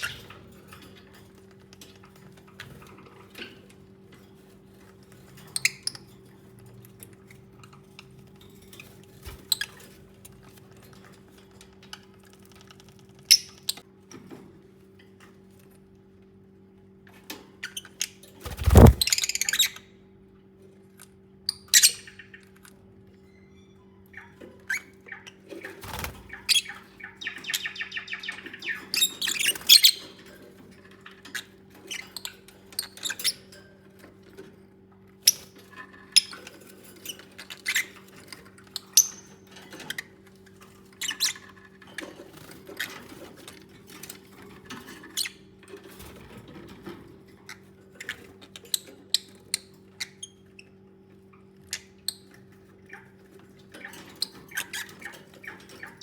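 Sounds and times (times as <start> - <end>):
lovebirds chirping and squeaking: 0.0 - 0.4, 17.6 - 19.8, 21.5 - 22.5, 23.2 - 30.3, 31.0 - 33.6, 36.0 - 40.1, 40.9 - 43.1, 44.9 - 45.4, 47.5 - 50.8, 51.7 - 56.0.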